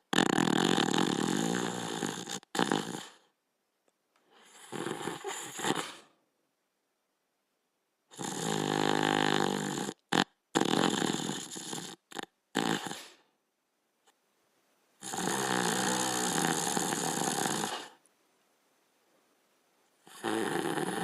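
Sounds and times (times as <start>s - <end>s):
dog snoring: 0.0s - 3.3s, 4.3s - 6.1s, 8.1s - 13.3s, 15.0s - 18.0s, 20.0s - 21.0s.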